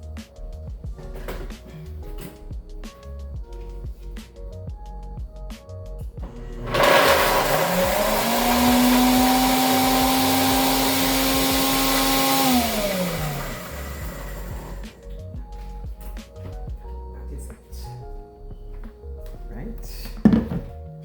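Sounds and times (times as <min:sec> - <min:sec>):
blender grinding: 0:06.2 - 0:15.0.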